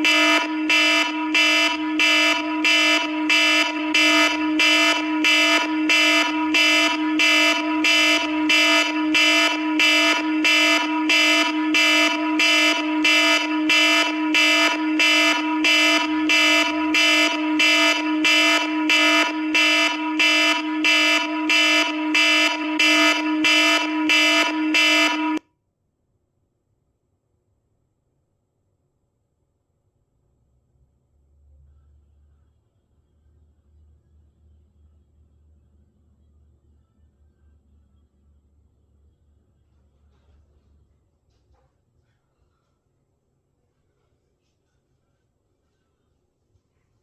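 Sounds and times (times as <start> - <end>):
phone alarm tone pulsing: 0.0 - 25.4.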